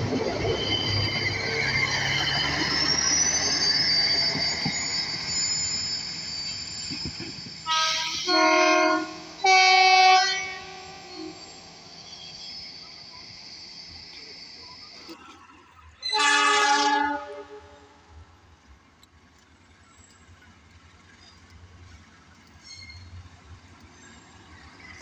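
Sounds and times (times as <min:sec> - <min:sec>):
train wheels squealing on rails: 0:00.0 - 0:18.6, 0:19.5 - 0:25.0
train horn blasts: 0:07.6 - 0:11.4, 0:16.1 - 0:18.0.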